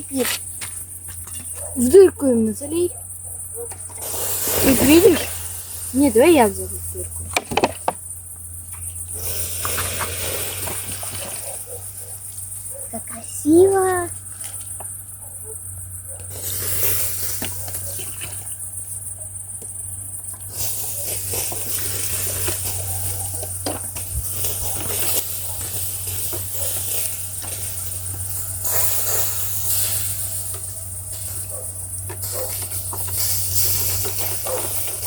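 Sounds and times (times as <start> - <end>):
crickets chirping: 0.0 - 35.0
fire hissing: 0.0 - 35.0
bonfire crackling and popping: 3.8 - 7.6, 8.4 - 12.6, 16.2 - 18.9, 19.6 - 35.0.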